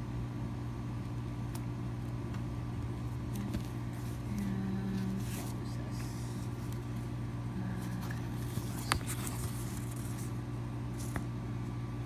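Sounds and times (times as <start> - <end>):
steady low hum: 0.0 - 12.0
paper rustling: 3.3 - 7.0, 7.7 - 11.3.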